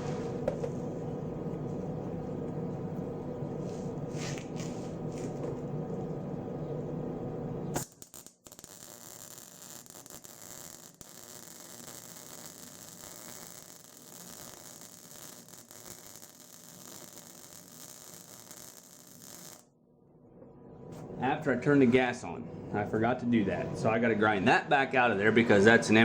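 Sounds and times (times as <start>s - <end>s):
loud low hum: 0.0s - 7.8s, 20.0s - 26.0s
welding arc crackling: 7.7s - 19.7s.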